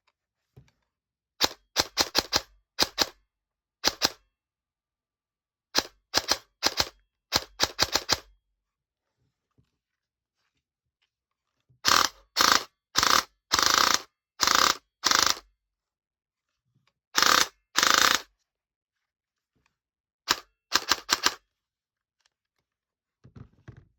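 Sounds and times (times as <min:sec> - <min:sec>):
airsoft gun firing bursts: 0:01.4 - 0:03.2, 0:03.8 - 0:04.2, 0:05.8 - 0:08.3, 0:11.8 - 0:15.4, 0:17.2 - 0:18.3, 0:20.3 - 0:21.4.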